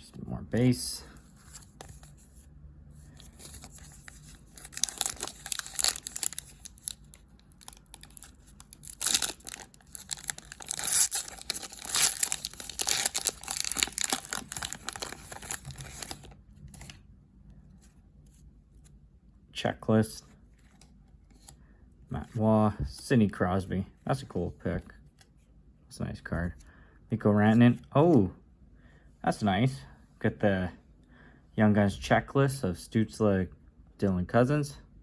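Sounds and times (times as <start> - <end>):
wrapper tearing and crinkling: 3.4 - 16.4.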